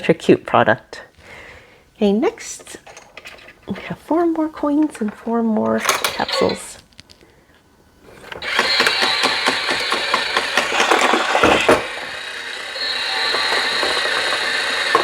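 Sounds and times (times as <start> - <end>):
toy machine motor and gears whirring: 5.7 - 6.8, 8.2 - 15.0.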